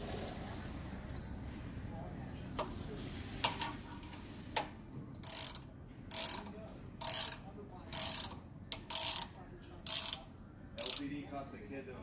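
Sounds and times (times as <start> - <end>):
ratchet wrench clicking: 5.2 - 11.1.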